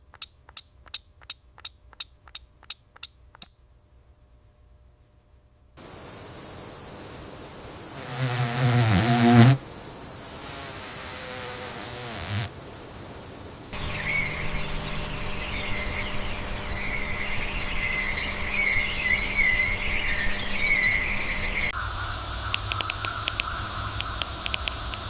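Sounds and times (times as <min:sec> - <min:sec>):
steady outdoor hiss: 0:00.0 - 0:25.0
small animal high chirps: 0:22.5 - 0:25.0.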